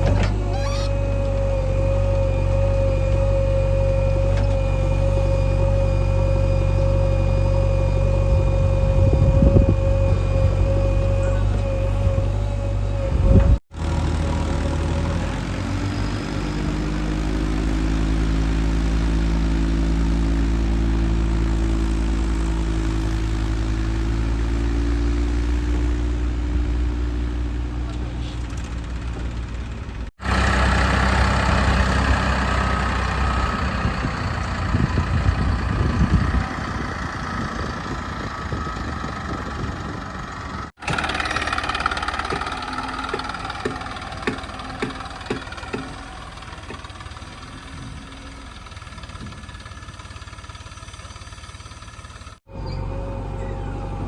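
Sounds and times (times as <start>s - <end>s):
diesel engine running under load: 0.0s - 54.0s
machinery clatter: 40.8s - 54.0s.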